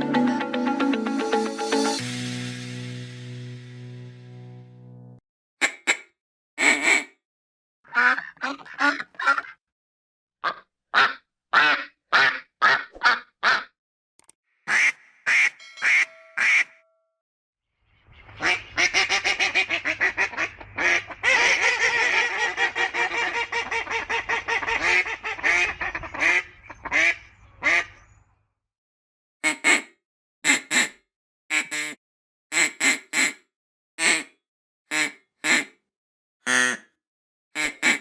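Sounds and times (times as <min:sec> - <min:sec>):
ducks quacking: 0:07.9 - 0:09.6, 0:18.3 - 0:28.0.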